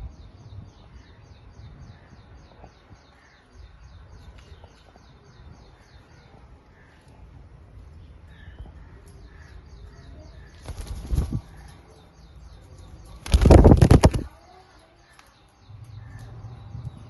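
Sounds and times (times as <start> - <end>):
parrot flapping wings: 10.5 - 11.6, 13.1 - 14.4.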